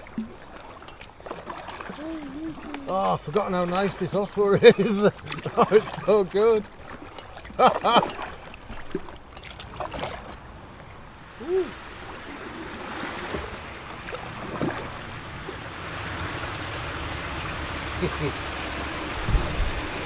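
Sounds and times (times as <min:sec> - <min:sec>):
paddle splashing water: 0:00.0 - 0:20.0
brief vocal sounds: 0:11.4 - 0:11.8.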